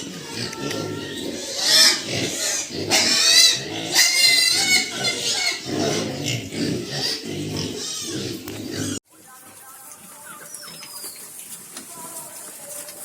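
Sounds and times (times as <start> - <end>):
piglets squealing: 0.0 - 9.0, 10.1 - 11.4
piglets grunting: 0.0 - 13.0.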